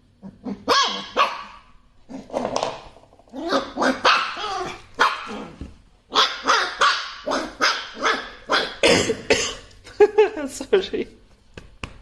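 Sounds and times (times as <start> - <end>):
dog barking: 0.7 - 1.7, 3.5 - 5.5, 6.1 - 8.8.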